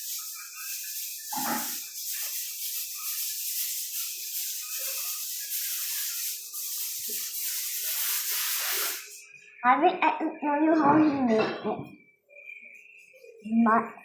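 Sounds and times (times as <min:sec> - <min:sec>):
steady hiss: 0:00.0 - 0:09.6.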